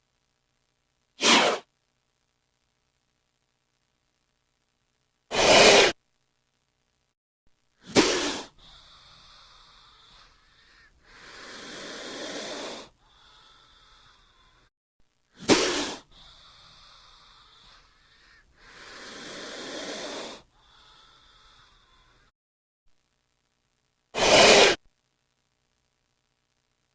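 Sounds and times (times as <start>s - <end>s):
cobra hissing: 1.2s - 1.7s, 5.3s - 6.0s, 7.8s - 14.7s, 15.4s - 22.3s, 24.2s - 24.8s.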